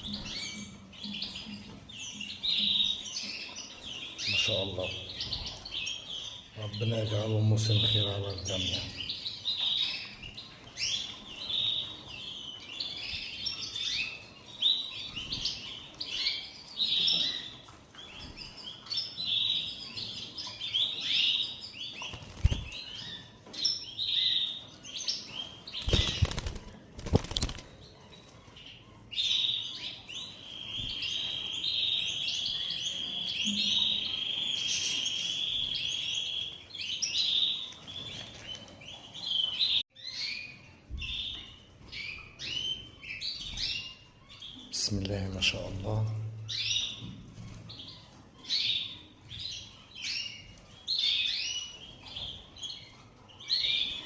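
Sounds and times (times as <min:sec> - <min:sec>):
canaries chirping and singing: 0:00.0 - 0:54.0
wing flapping: 0:22.0 - 0:22.8, 0:25.8 - 0:27.8.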